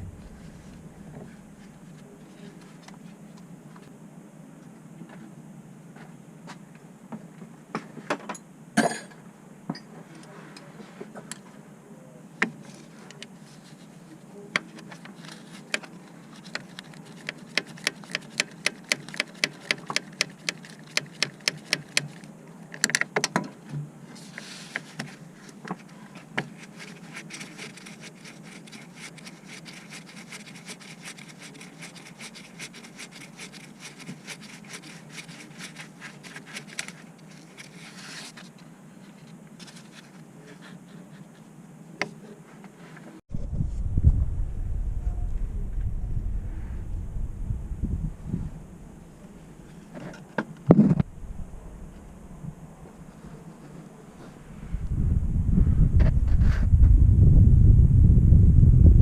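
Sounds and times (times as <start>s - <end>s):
hand tools clicking and knocking: 15.7s - 22.2s.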